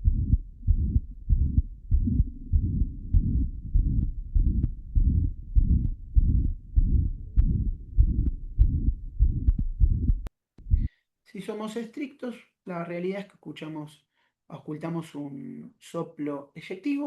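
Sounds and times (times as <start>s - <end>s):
heartbeat through stethoscope: 0.0s - 10.9s
whooshing heart murmur: 0.0s - 10.9s.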